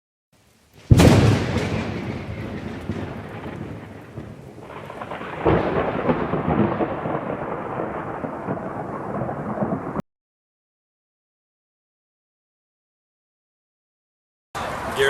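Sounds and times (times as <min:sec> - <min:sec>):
rain: 0:00.4 - 0:10.0, 0:14.6 - 0:15.0
thunder crack: 0:00.8 - 0:10.0
thunder rumbling: 0:00.8 - 0:10.0.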